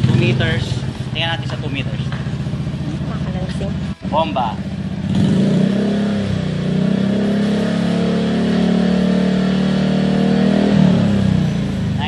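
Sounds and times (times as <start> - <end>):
scooter engine revving high: 0.0 - 12.0.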